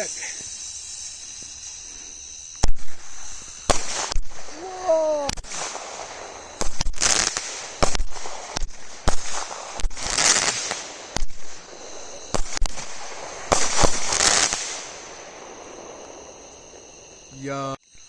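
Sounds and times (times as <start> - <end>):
firework shots banging and crackling: 2.6 - 16.7.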